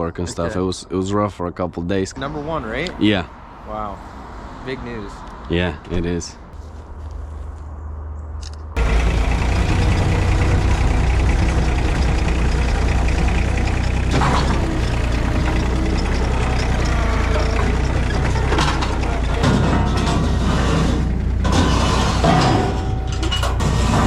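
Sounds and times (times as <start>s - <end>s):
engine idling: 8.8s - 24.0s.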